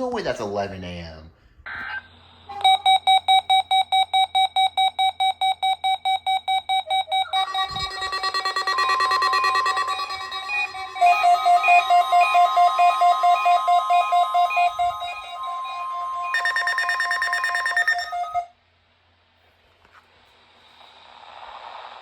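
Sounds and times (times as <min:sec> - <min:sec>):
steady high alarm tone: 0:02.5 - 0:18.5
rapid electronic beeping: 0:02.6 - 0:18.5.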